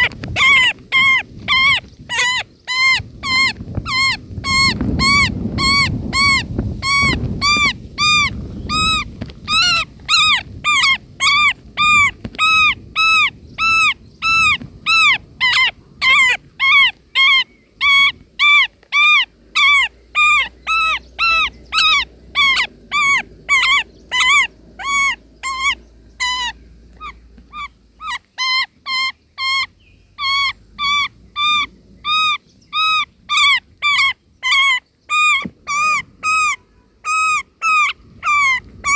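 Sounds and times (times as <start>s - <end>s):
nestlings begging calls: 0.0s - 38.9s.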